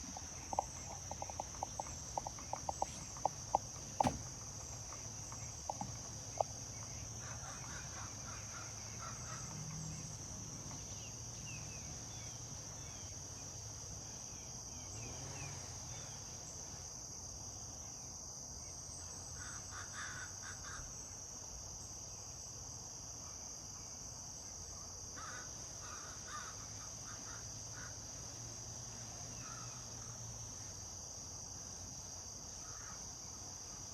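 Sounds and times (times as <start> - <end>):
woodpecker pecking wood: 0.0 - 6.5
crickets droning: 0.0 - 33.9
crow calling quietly: 19.4 - 20.9, 25.2 - 28.0.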